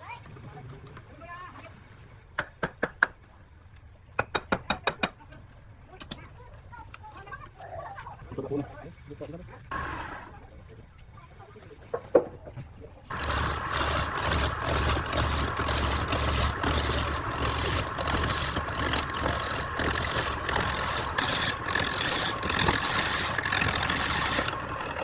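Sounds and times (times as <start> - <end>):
wood lathe cutting: 13.1 - 25.0.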